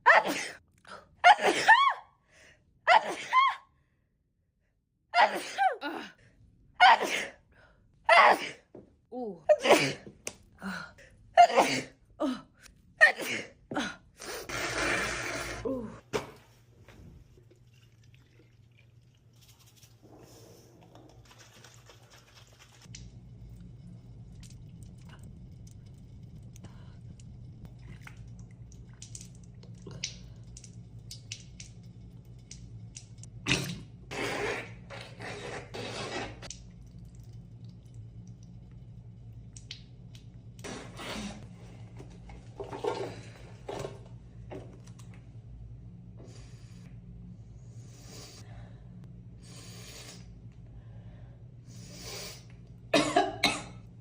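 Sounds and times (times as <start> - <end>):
low steady hum: 15.6 - 34.2, 34.8 - 54.0.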